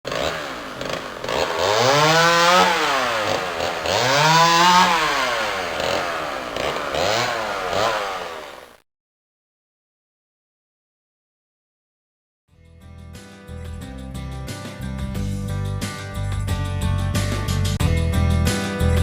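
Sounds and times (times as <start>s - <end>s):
chainsaw revving: 0.0s - 8.8s.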